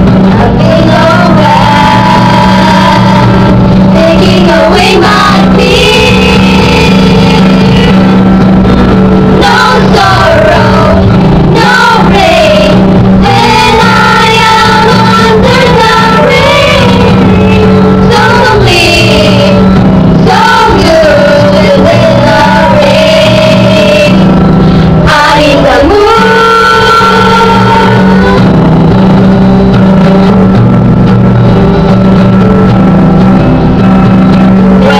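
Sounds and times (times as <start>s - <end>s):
person singing: 0.0s - 8.2s, 9.4s - 28.5s
sustained accompaniment: 0.0s - 34.9s.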